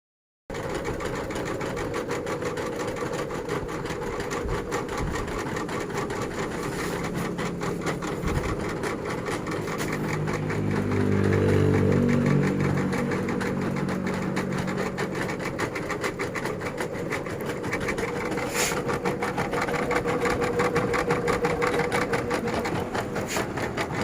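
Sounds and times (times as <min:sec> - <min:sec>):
mechanical hum: 0:04.4 - 0:19.7.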